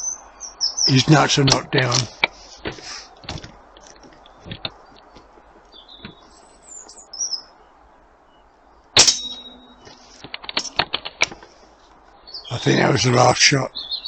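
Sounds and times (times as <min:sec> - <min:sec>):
small birds chirping: 0:00.0 - 0:14.0
pellet clanging on metal target: 0:09.0 - 0:11.4.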